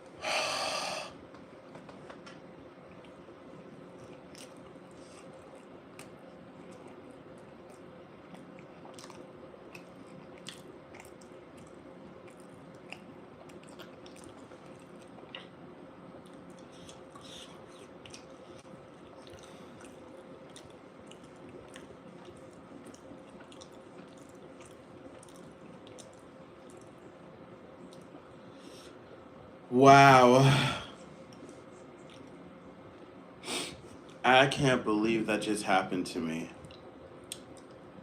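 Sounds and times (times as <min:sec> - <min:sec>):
faint steady hum: 0:00.0 - 0:38.0
wet chewing: 0:04.0 - 0:15.6, 0:16.2 - 0:27.0.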